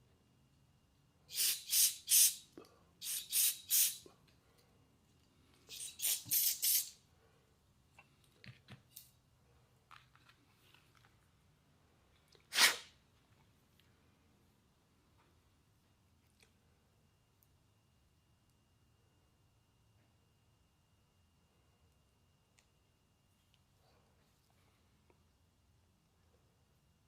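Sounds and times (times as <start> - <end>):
pressurised spray hissing: 1.3 - 2.4, 3.0 - 4.0, 5.7 - 7.0.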